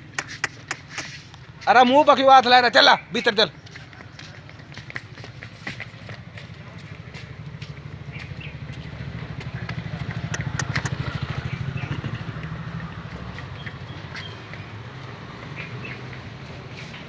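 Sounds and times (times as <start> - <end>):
engine running: 3.8 - 17.0.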